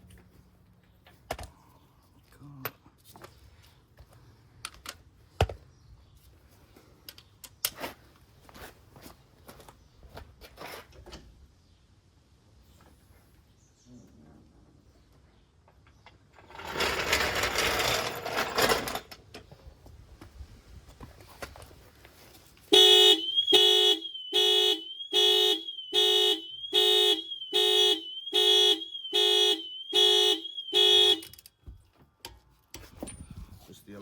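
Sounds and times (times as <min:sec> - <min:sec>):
car alarm horn honking: 0:22.7 - 0:31.4.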